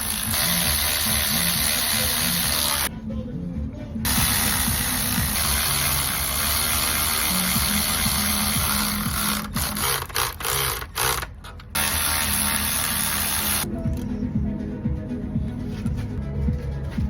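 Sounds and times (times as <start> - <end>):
background music with bass line: 0.0 - 10.1, 11.8 - 17.0.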